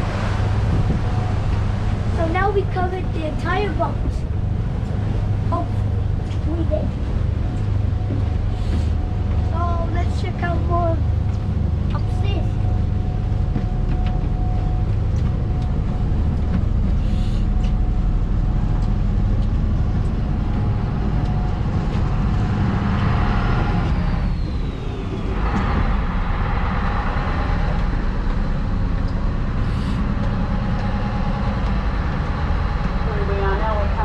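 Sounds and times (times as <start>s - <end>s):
boat engines droning: 0.0s - 34.0s
rushing noise: 11.0s - 34.0s.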